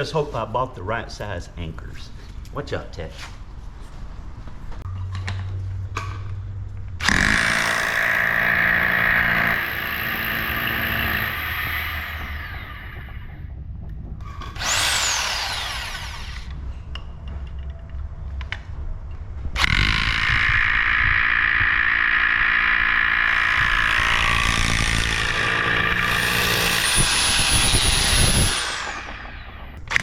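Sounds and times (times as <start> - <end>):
rotary hammer drill running: 7.0 - 13.4, 14.4 - 16.5, 19.6 - 30.0.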